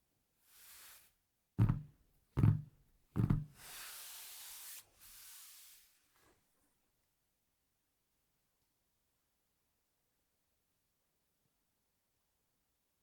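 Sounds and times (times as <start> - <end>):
dull knocks on desk: 1.6 - 3.6
rustling sliding noise: 3.5 - 6.4.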